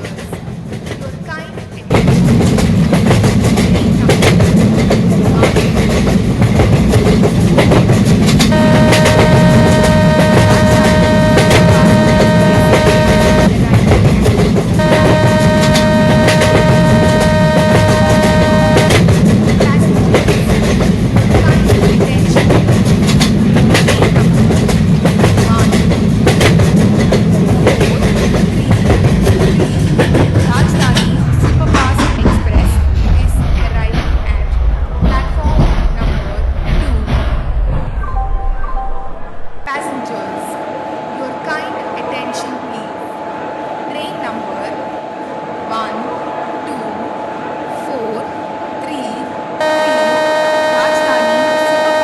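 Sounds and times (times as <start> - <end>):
train rumbling on rails: 0.0 - 52.0
steady multi-note tone: 8.5 - 13.5, 14.8 - 19.1.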